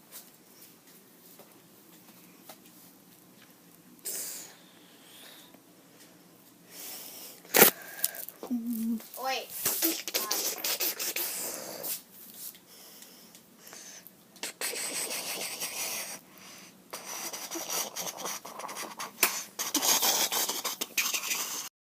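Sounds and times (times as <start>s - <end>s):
hissing scratchy noise: 8.8s - 12.1s, 14.4s - 16.2s, 17.0s - 21.7s.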